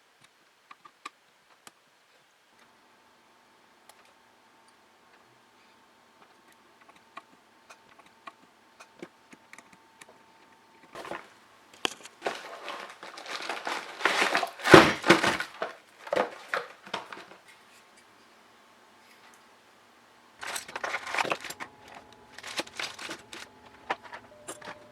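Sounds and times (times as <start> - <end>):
plastic packaging crinkling: 10.9 - 17.6, 20.4 - 24.9
small parts clicking and tapping: 20.4 - 24.9.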